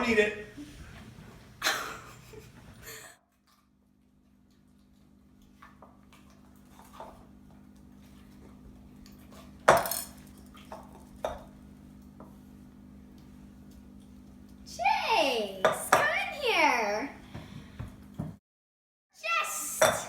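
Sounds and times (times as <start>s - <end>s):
bowl and spoon clattering: 9.7s - 10.3s.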